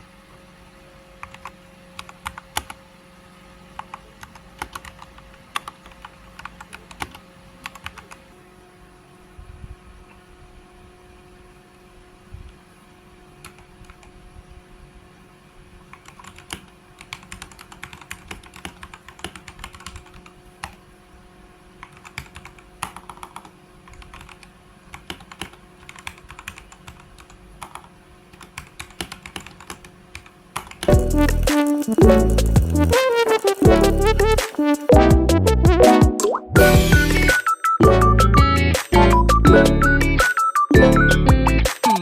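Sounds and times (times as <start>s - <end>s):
computer keyboard typing: 1.2s - 2.8s, 3.8s - 8.2s, 13.4s - 14.1s, 15.9s - 20.8s, 21.8s - 35.0s
loud background music: 30.9s - 42.0s.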